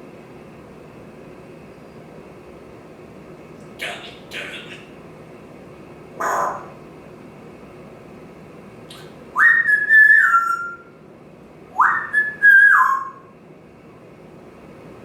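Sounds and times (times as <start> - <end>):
parrot whistling: 8.9 - 10.9, 11.7 - 13.3.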